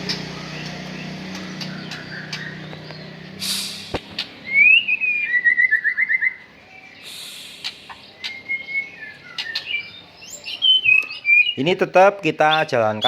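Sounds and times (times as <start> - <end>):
sharp clicks: 0.0 - 4.4, 7.5 - 8.4
bird singing whistled phrase: 0.5 - 11.7
brief hissing bursts: 3.4 - 4.2, 7.0 - 8.1.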